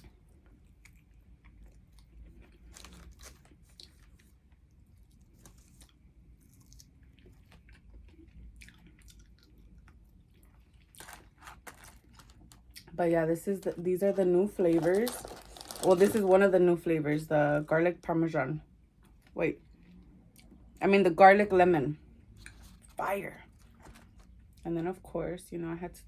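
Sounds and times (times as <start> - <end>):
person chewing and crunching food: 0.0 - 13.0, 14.5 - 16.2, 22.1 - 24.6.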